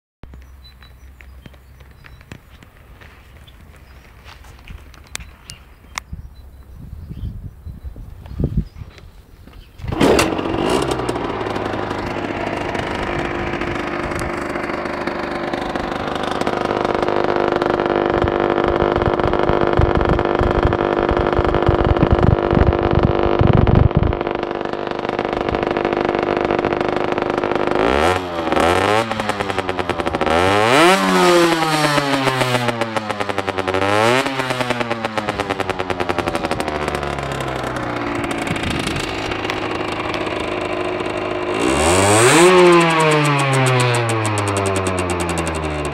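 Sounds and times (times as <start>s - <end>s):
motorcycle engine idling and revving: 0.2s - 45.9s.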